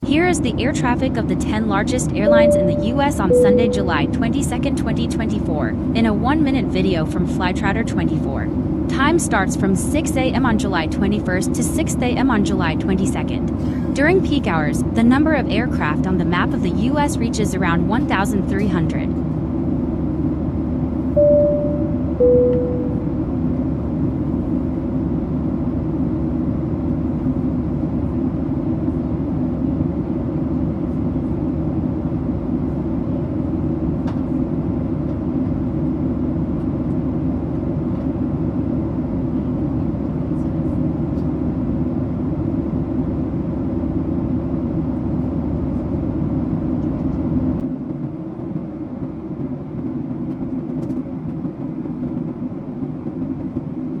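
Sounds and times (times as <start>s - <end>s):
low mechanical drone: 0.0s - 29.2s.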